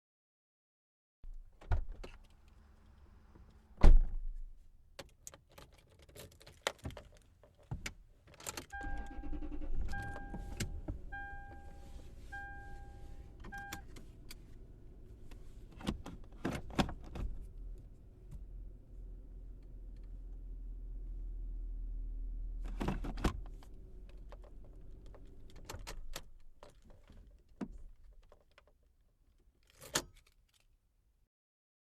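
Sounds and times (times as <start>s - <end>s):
keys jingling: 5.0s - 7.3s
dashboard warning chime beeping: 8.7s - 13.9s
car door shutting: 8.8s - 14.0s
car engine idling: 8.8s - 15.6s.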